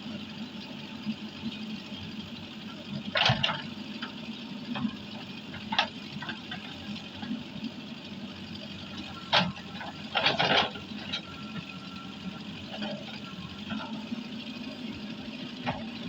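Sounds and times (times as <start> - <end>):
diesel engine running: 0.0 - 16.0.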